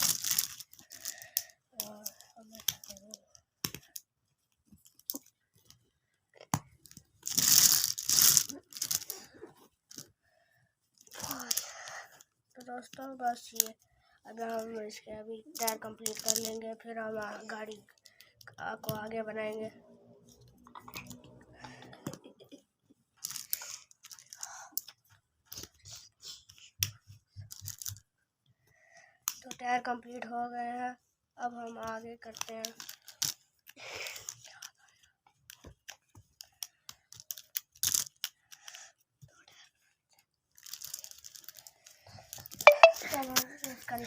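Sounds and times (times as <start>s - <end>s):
plastic blocks clicking together: 0.0s - 4.0s, 6.4s - 9.2s, 15.6s - 16.6s, 23.2s - 24.9s, 27.5s - 28.0s, 32.3s - 33.4s, 35.4s - 38.8s, 40.6s - 44.0s.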